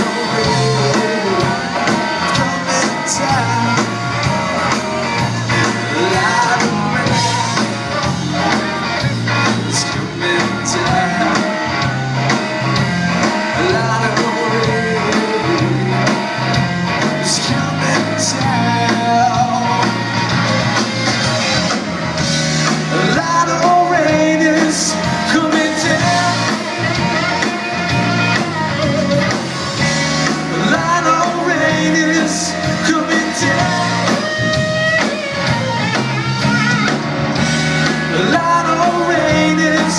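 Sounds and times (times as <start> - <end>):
person singing: 0.0 - 20.3, 22.8 - 35.2, 37.8 - 39.9
blues-rock band playing: 0.0 - 39.9.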